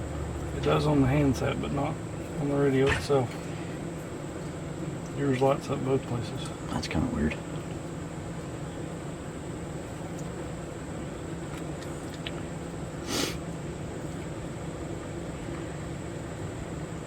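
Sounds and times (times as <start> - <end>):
steady low hum: 0.0 - 17.0
burst of hiss: 13.0 - 13.4.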